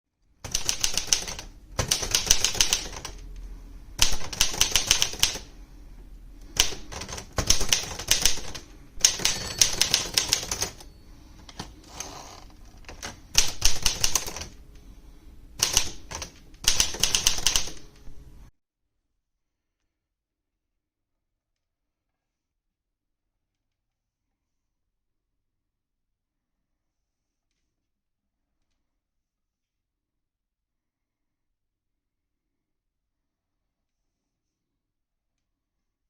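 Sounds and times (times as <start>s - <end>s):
manual typewriter typing: 0.4s - 3.2s, 4.0s - 5.5s, 6.5s - 14.6s, 15.6s - 18.0s.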